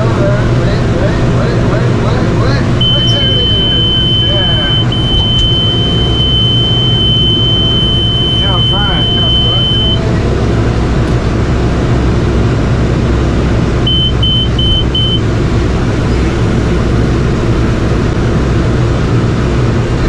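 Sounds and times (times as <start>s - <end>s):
tractor engine droning: 0.0s - 20.0s
high electronic beeps: 2.8s - 10.0s, 13.9s - 15.2s.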